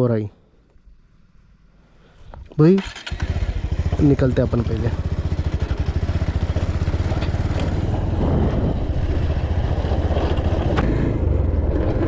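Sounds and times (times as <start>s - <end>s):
motorcycle engine running: 2.9s - 12.0s.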